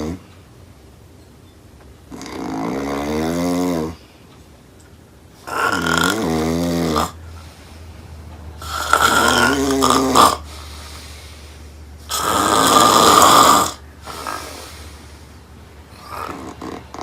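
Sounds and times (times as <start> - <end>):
loud buzzing snoring: 0.0 - 0.3, 2.1 - 4.1, 5.4 - 7.2, 8.6 - 11.1, 12.0 - 15.0, 15.9 - 17.0.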